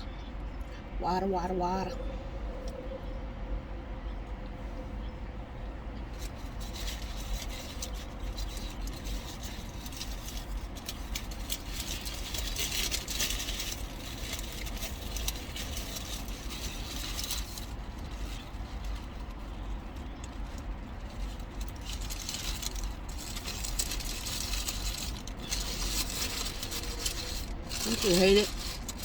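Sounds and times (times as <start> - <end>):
car cabin low rumble: 0.0 - 29.0
wrapping crinkling: 6.1 - 29.0.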